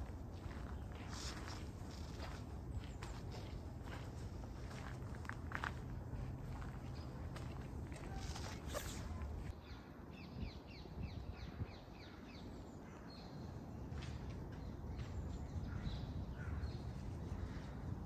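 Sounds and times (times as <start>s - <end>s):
soft footsteps on a path: 0.0s - 9.6s.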